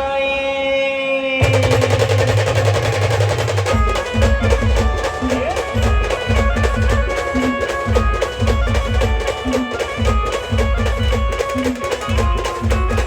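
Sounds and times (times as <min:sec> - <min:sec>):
heavy drums beating: 0:01.4 - 0:13.0
band playing devotional music: 0:03.1 - 0:13.0.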